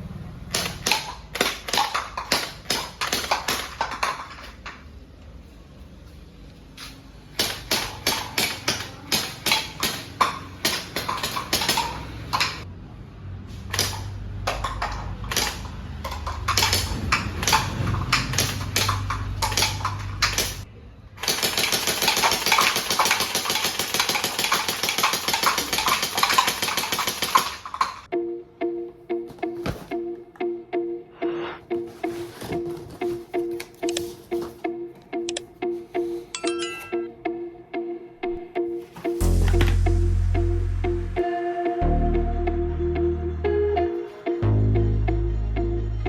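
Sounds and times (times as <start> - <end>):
gel blaster full-auto rattle: 0.5 - 4.2, 13.7 - 20.6, 21.2 - 28.1.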